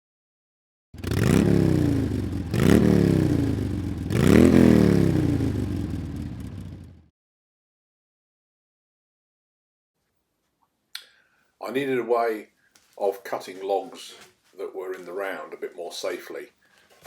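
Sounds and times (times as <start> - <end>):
motor revving: 1.0 - 5.7.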